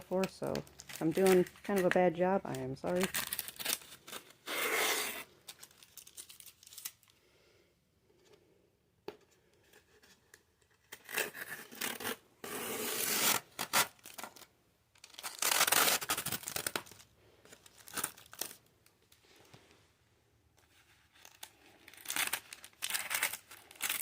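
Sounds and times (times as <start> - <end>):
tape peeling off styrofoam: 3.2 - 5.3, 10.9 - 17.0.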